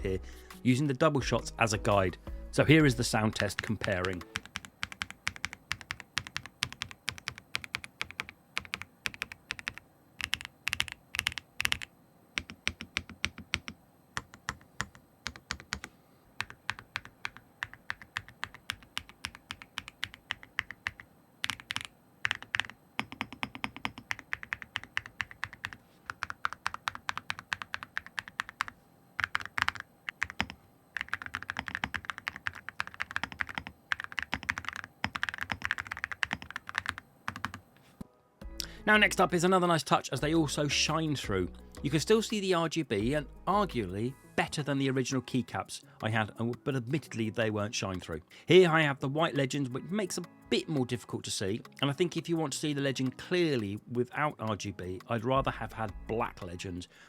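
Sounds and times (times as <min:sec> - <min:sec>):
mechanical keyboard typing: 0:03.2 - 0:37.6.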